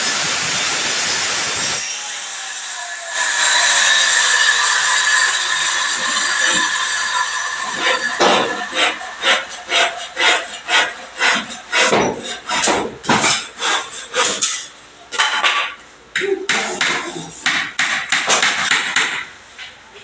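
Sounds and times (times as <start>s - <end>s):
hammer blows: 3.1s - 14.6s.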